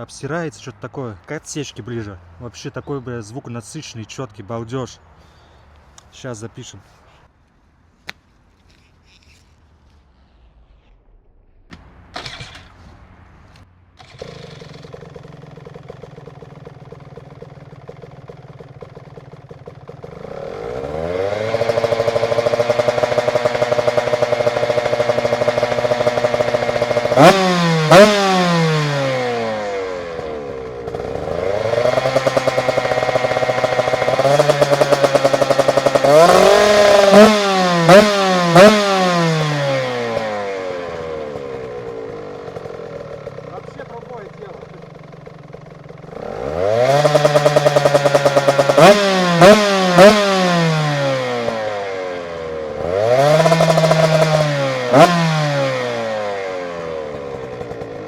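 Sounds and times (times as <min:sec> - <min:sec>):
two-stroke motorcycle engine revving: 0:14.0 - 0:58.0.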